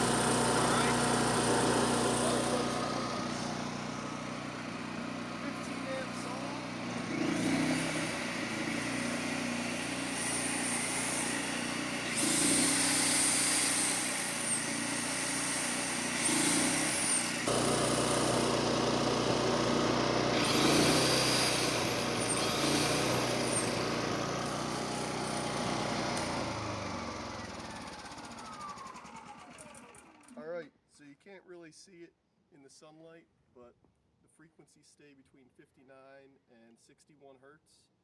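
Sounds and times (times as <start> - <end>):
generator running: 0.0 - 30.4
power tool motors whining: 0.0 - 30.4.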